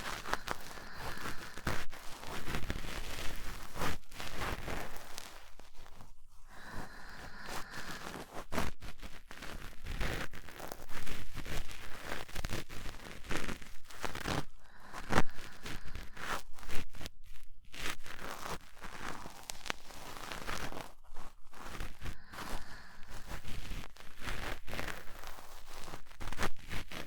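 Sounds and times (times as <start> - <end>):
cotton swab scratching rustles: 0.0 - 6.0.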